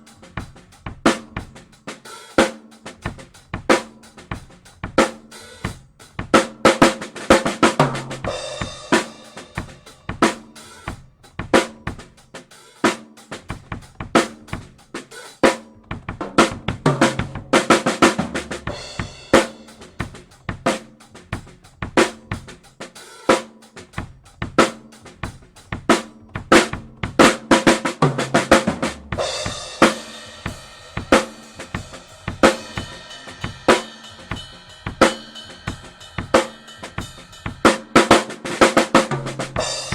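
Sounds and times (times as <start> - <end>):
drum kit groove: 0.0 - 39.9
lower-pitched drum hits: 29.2 - 39.9
cymbal ringing: 29.3 - 38.5.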